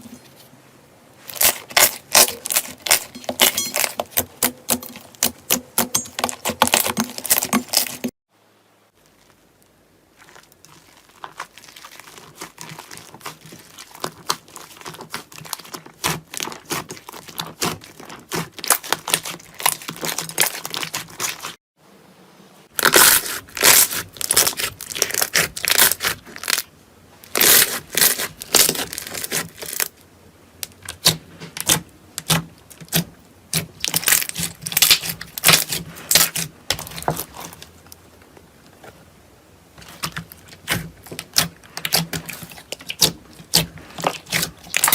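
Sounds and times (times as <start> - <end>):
slime crackling and popping: 10.1 - 21.6, 22.8 - 26.7, 27.3 - 29.9, 30.6 - 37.7, 39.8 - 44.9.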